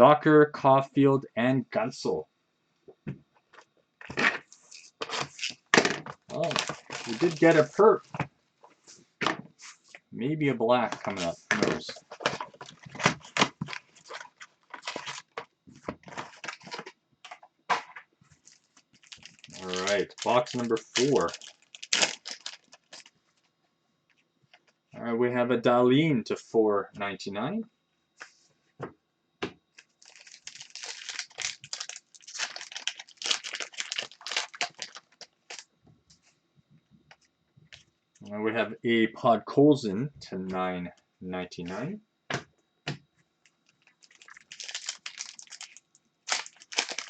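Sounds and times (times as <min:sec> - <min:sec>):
wrappers rustling and crinkling: 0:04.1 - 0:08.1, 0:10.8 - 0:16.9, 0:18.4 - 0:23.2, 0:29.8 - 0:35.7, 0:43.6 - 0:47.0.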